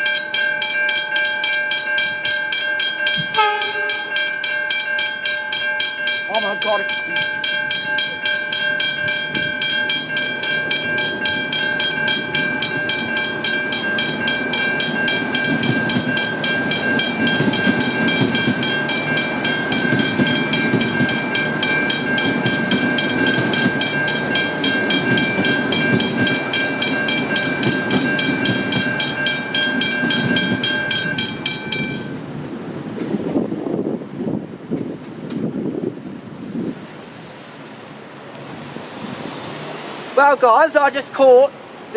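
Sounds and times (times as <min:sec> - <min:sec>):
level crossing bell ringing: 0:00.0 - 0:32.2
diesel railcar rumbling past: 0:00.0 - 0:41.9.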